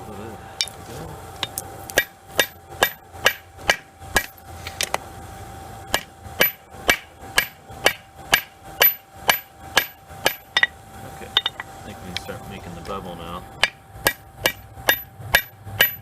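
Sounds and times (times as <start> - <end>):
steady hum: 0.0 - 16.0
hammer striking metal on anvil: 1.4 - 4.4, 5.9 - 12.3, 13.6 - 16.0.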